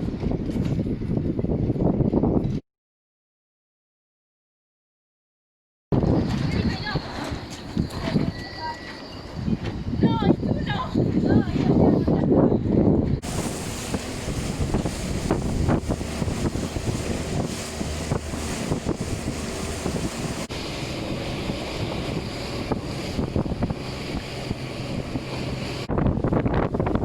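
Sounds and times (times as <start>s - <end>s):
wind buffeting microphone: 0.0s - 2.6s, 5.9s - 27.0s
rushing splashing water: 13.2s - 25.9s.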